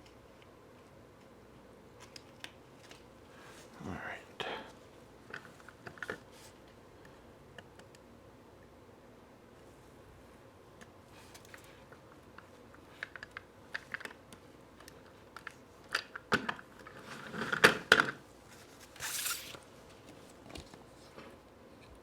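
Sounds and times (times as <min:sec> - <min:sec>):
sticker sheet rustling: 0:19.0 - 0:19.6.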